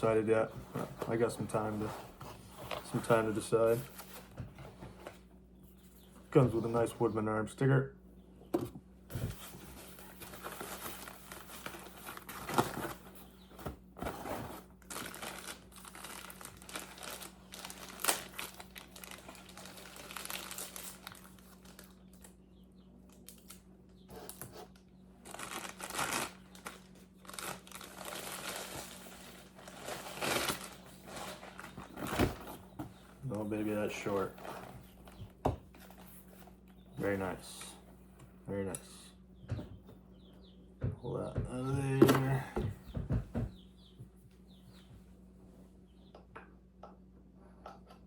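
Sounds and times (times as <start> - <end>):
faint steady hum: 0.0 - 48.0
packaging crinkling and rustling: 9.3 - 13.2, 14.0 - 22.3, 25.2 - 32.6.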